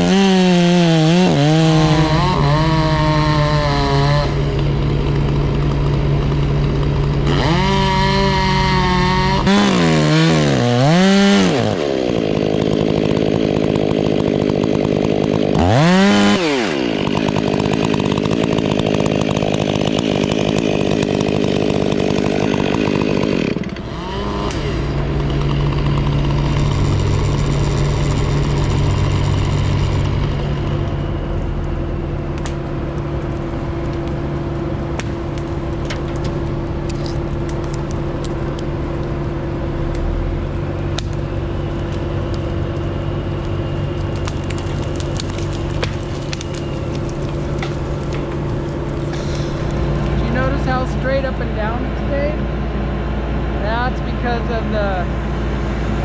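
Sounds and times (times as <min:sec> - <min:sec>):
chainsaw revving and cutting: 0:00.0 - 0:31.9, 0:33.3 - 0:56.0
low engine hum: 0:02.0 - 0:09.6, 0:23.7 - 0:56.0.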